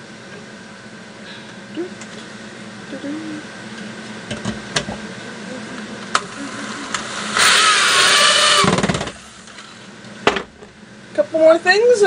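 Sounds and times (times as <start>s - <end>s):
handheld power tool whine: 6.1s - 9.9s.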